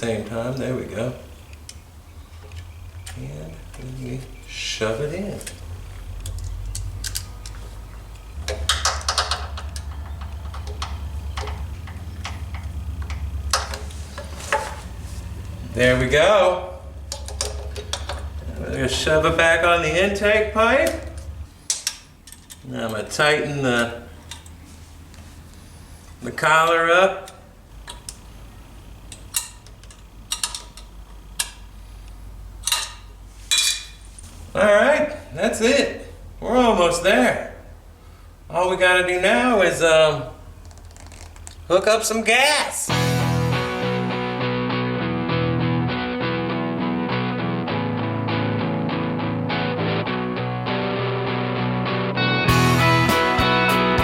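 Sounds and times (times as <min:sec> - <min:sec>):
steady low hum: 0:00.0 - 0:40.7
small metal parts clicking: 0:06.2 - 0:07.6, 0:29.1 - 0:33.9
sharp metallic clicks of hand tool: 0:20.8 - 0:22.6.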